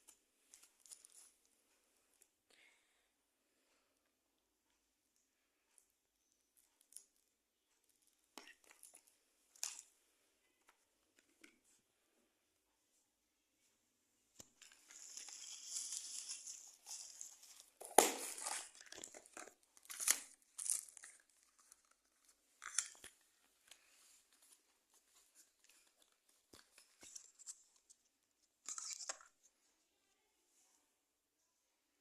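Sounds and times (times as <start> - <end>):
packaging ripping and rustling: 14.6 - 23.2.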